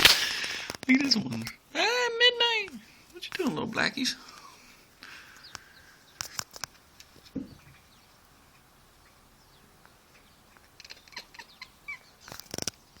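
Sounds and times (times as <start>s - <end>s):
kitten chattering: 10.8s - 12.1s.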